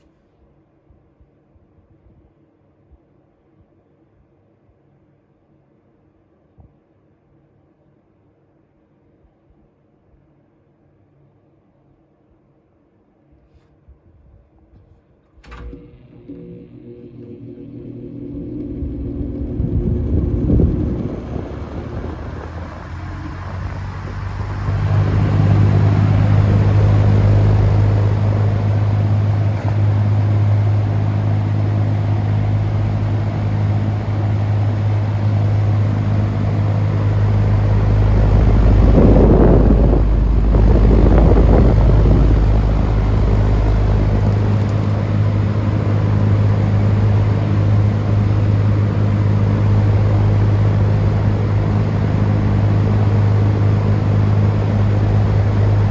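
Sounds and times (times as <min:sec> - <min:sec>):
fan motor hum: 0:15.4 - 0:55.9
deep rumble: 0:16.7 - 0:55.9
air rushing: 0:19.6 - 0:46.0.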